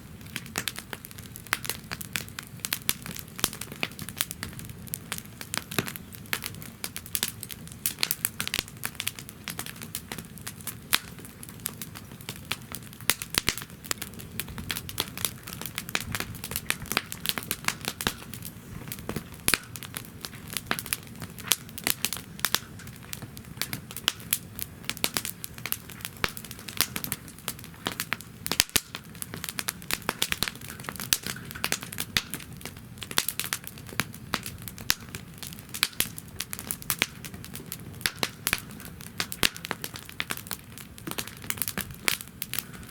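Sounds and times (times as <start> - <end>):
low rumble of flames: 0.0 - 42.9
wood fire crackling and popping: 0.0 - 42.9.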